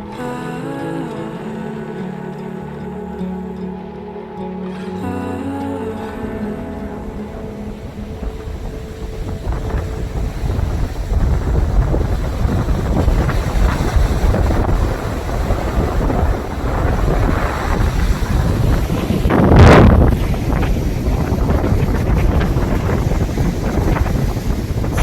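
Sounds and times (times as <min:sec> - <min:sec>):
strong wind on microphone: 0:06.8 - 0:25.0.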